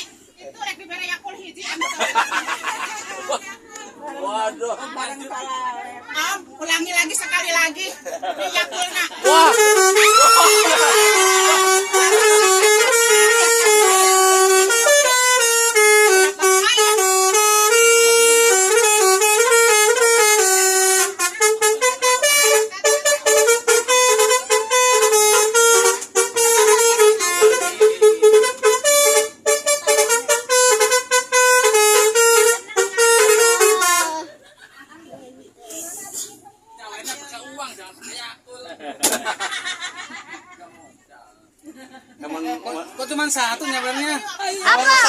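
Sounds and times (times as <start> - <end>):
musical air horn melody: 9.2 - 34.3.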